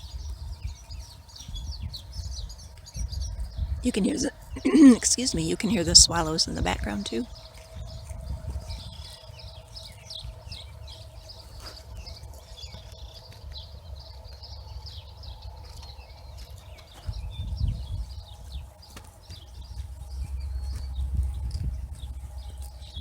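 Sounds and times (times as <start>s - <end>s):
low rumble: 19.4s - 23.0s.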